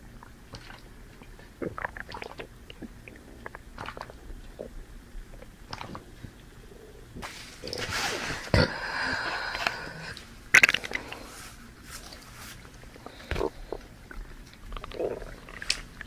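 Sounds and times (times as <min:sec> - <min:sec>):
person chewing with wet smacks: 0:00.2 - 0:04.7, 0:13.0 - 0:16.0.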